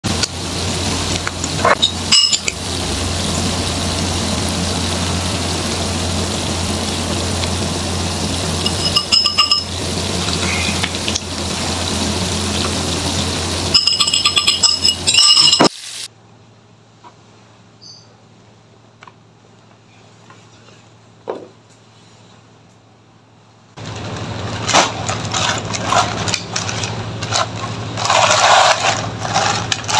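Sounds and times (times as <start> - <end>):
food sizzling in oil: 0.1 - 16.1
utensil clinking on a dish: 8.6 - 9.8, 13.7 - 15.7.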